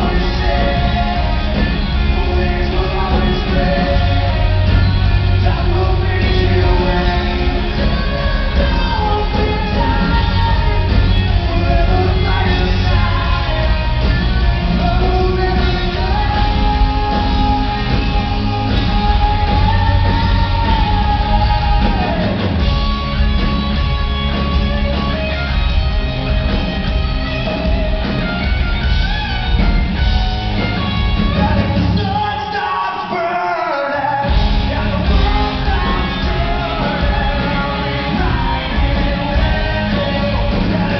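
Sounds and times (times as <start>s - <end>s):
person singing: 0.0s - 22.7s, 31.2s - 40.9s
live rock band playing: 0.0s - 40.9s.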